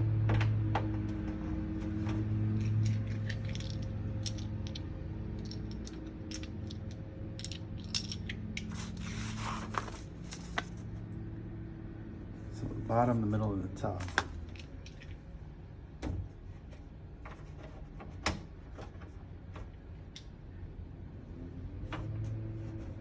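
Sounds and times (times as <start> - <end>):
steady low hum: 0.0 - 23.0
plastic pieces clicking: 2.6 - 8.7
cardboard rustling and scraping: 8.7 - 10.9.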